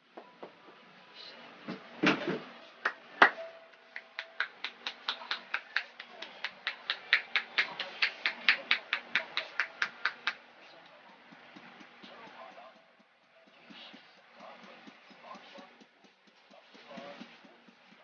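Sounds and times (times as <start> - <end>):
hand strikes slapping skin: 4.0 - 10.4.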